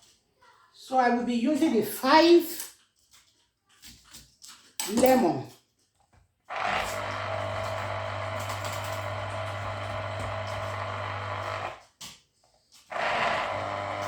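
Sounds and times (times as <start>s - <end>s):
electric juicer motor whirring: 6.5s - 11.8s, 12.8s - 14.0s.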